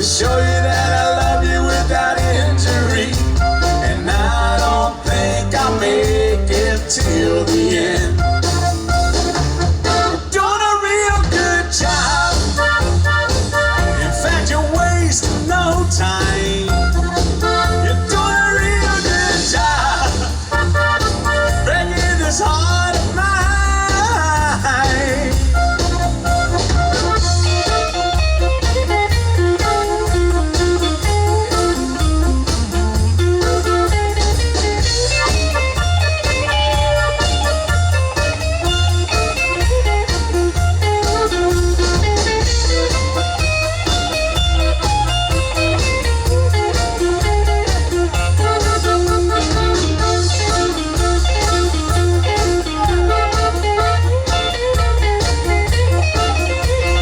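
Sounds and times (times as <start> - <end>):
bass and drums: 0.0 - 57.0
electric guitar solo: 24.3 - 57.0.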